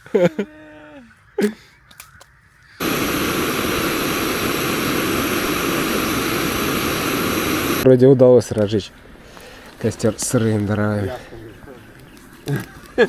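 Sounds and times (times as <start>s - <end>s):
faint high whine: 2.6s - 7.9s
steady loud rushing noise: 2.8s - 7.9s.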